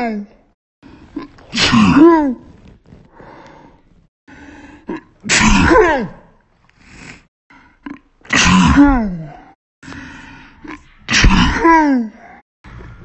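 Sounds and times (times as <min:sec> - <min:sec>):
quiet breathing: 0:03.1 - 0:04.9, 0:09.8 - 0:10.7.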